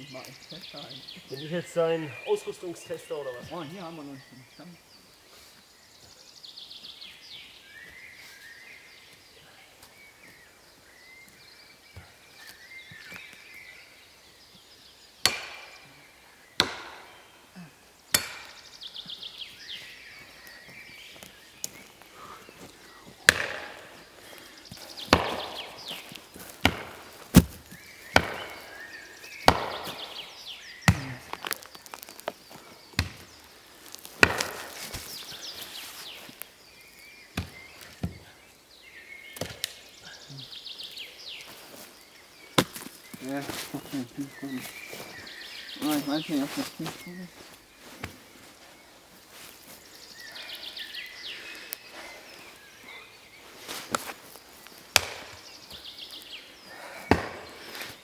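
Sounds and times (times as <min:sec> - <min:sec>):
birds singing: 0:00.0 - 0:58.0
axe chopping wooden log: 0:15.2 - 0:15.8, 0:16.6 - 0:17.3, 0:18.1 - 0:18.6, 0:23.2 - 0:24.1, 0:25.0 - 0:32.3, 0:33.0 - 0:35.2, 0:39.4 - 0:39.8, 0:42.6 - 0:42.9, 0:54.9 - 0:55.5, 0:57.0 - 0:57.9.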